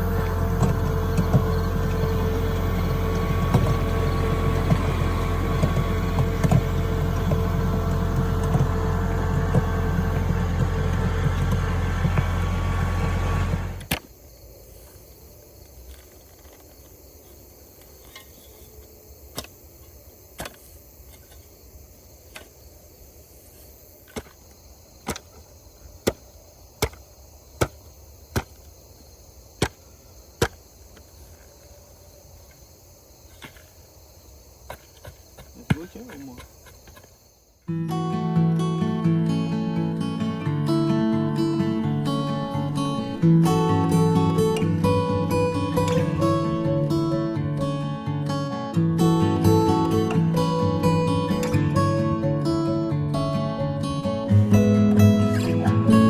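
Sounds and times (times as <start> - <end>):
engine running: 0.0 - 14.0, 38.6 - 48.0
insects chirping: 0.0 - 56.0.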